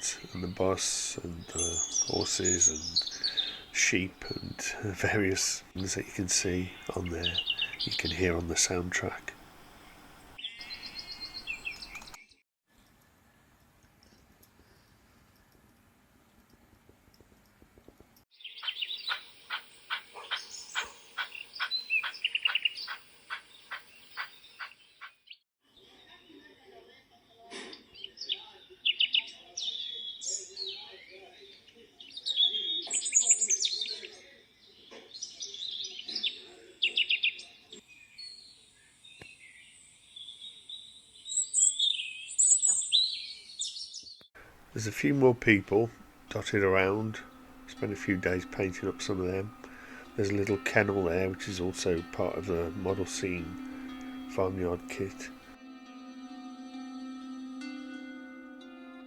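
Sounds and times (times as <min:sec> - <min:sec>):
small birds chirping: 0:00.0 - 0:13.4, 0:18.3 - 0:55.6
thin high trill: 0:45.7 - 0:58.4.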